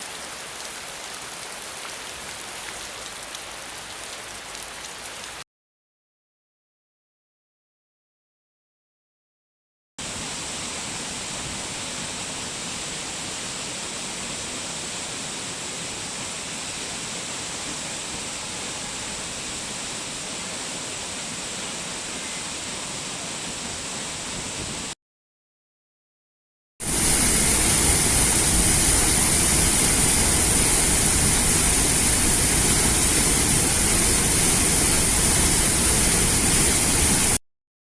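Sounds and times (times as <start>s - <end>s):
waterfall rushing: 0.0s - 5.4s, 26.9s - 37.4s.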